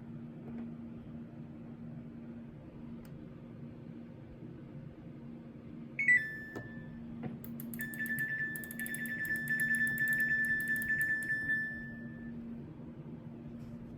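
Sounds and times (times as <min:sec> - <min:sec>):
steady low hum: 0:00.0 - 0:13.9
washing machine beeping: 0:06.0 - 0:12.6.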